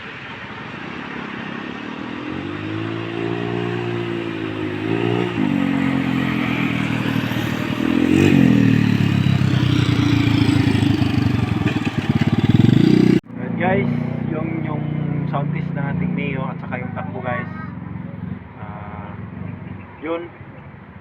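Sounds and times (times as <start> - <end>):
scooter engine revving: 1.6 - 13.3.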